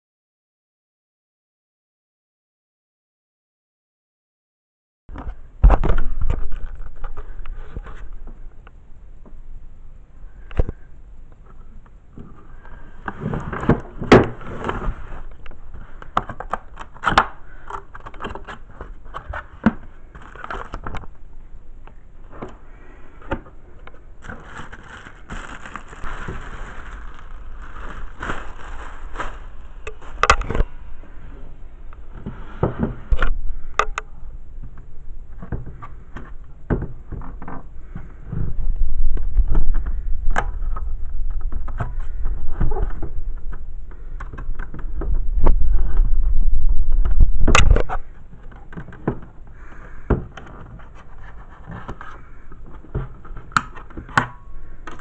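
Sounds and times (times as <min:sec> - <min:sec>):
packaging crackling and scraping: 0:12.2 - 0:21.2, 0:22.2 - 0:31.0.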